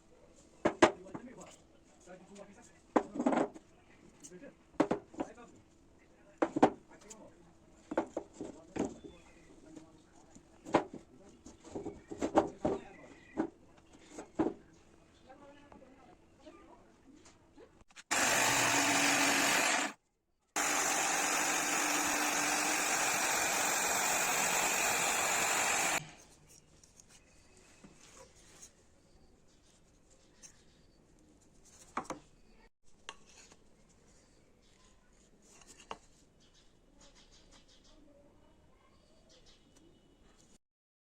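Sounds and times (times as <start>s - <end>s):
power tool running: 18.1s - 20.0s, 20.6s - 26.2s.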